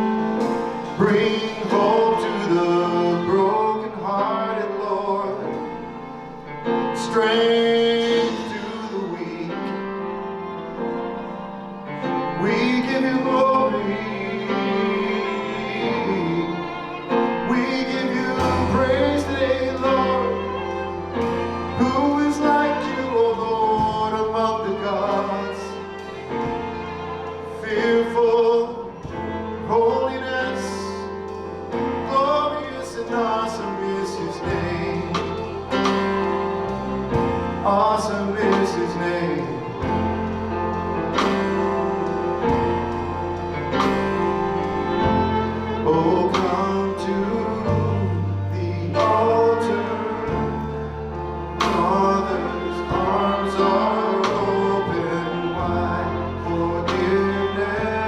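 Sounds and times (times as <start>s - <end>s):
instrumental accompaniment: 0.0s - 58.0s
voices singing worship song: 0.0s - 58.0s
deep bass: 12.2s - 58.0s.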